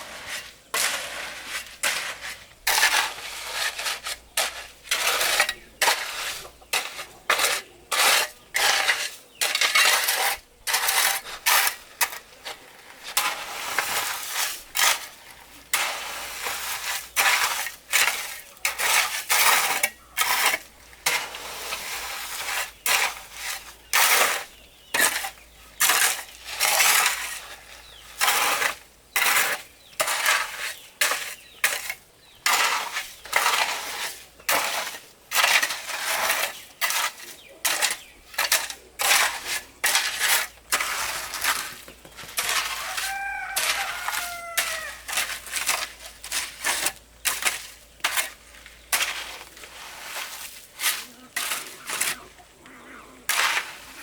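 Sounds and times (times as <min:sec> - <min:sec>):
scraping crunching strokes: 0:00.0 - 0:54.0
bird calls: 0:41.9 - 0:45.1, 0:51.0 - 0:53.3.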